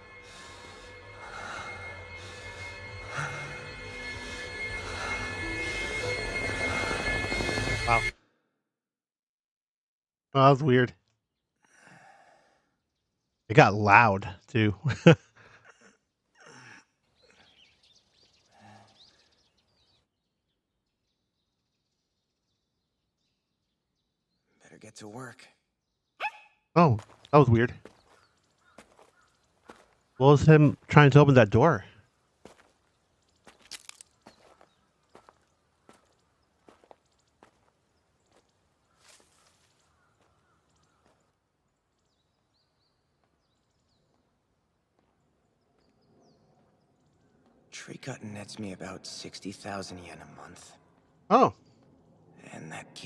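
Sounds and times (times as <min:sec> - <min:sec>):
faint outdoor ambience: 0:26.8 - 0:53.0.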